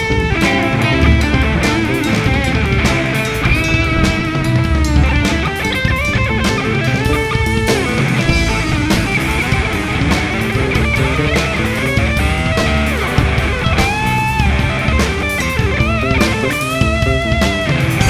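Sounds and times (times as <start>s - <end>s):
bass guitar: 0.0s - 18.0s
drums: 0.0s - 18.0s
lead electric guitar: 0.0s - 18.0s.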